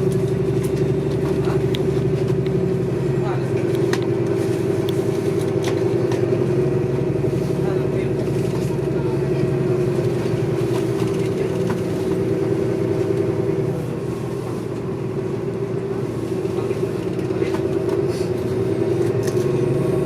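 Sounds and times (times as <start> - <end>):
bus drivetrain drone: 0.0 - 20.0
road noise: 0.0 - 20.0.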